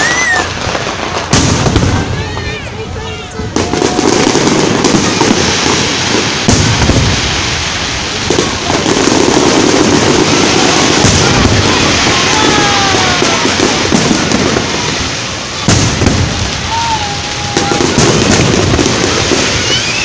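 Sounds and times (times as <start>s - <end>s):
fireworks bangs: 0.0s - 20.0s
fireworks crackling: 0.0s - 20.0s
falling whistle: 19.5s - 20.0s.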